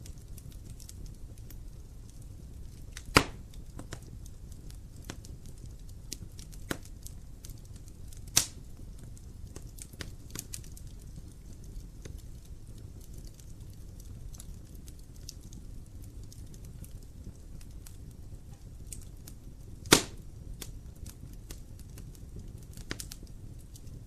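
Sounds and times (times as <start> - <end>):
wood fire crackling: 0.0 - 24.0
loud fire pop: 3.1 - 3.9, 19.8 - 20.2.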